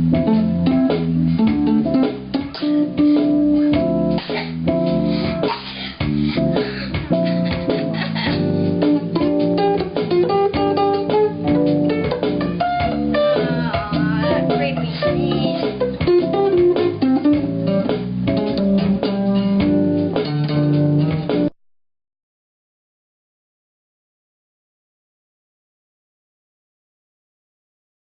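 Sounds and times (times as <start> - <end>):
blues guitar playing: 0.0 - 21.5.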